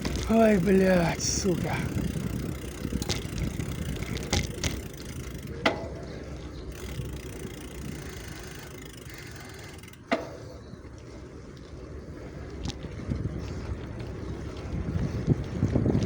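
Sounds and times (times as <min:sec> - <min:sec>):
bicycle clicks: 0:00.0 - 0:16.0
wind and rolling rumble: 0:00.0 - 0:16.0.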